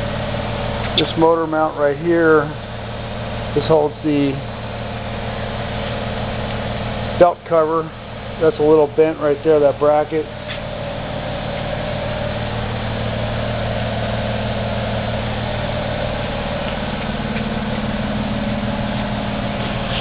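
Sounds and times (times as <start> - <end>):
bandsaw motor humming: 0.0 - 20.0.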